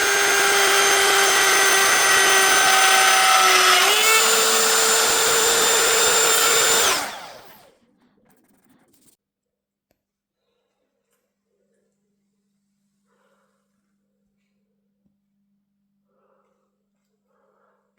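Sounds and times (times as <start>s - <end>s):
power tool motor whining: 0.0s - 7.7s.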